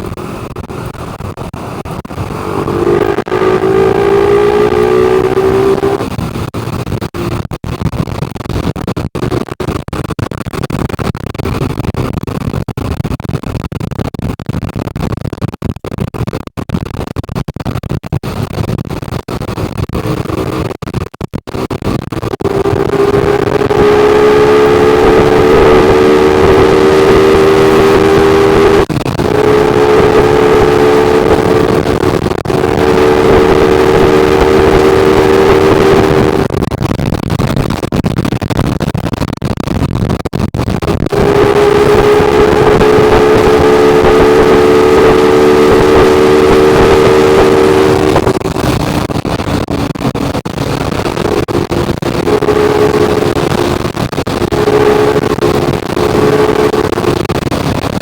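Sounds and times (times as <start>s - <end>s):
vehicle engine revving: 0.0s - 7.5s, 21.5s - 38.0s, 40.8s - 58.0s.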